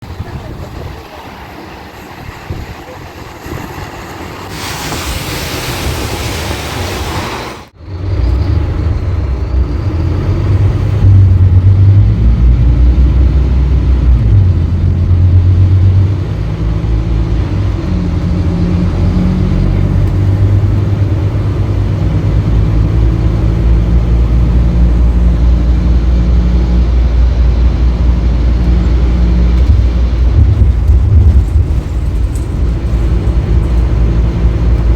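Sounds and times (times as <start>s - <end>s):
bus diesel engine under load: 0.0s - 34.9s
loud hiss of air: 4.4s - 7.7s.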